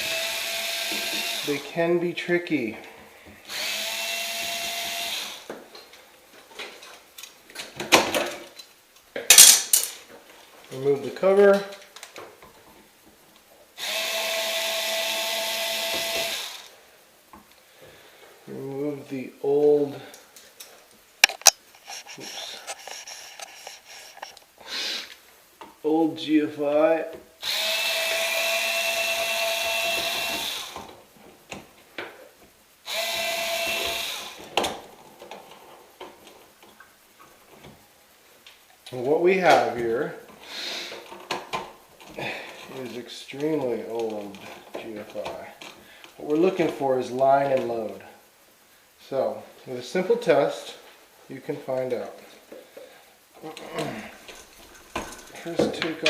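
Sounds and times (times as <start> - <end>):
power drill whining: 0.0 - 1.7, 3.5 - 5.5, 13.8 - 16.7, 27.4 - 30.9, 32.9 - 34.5.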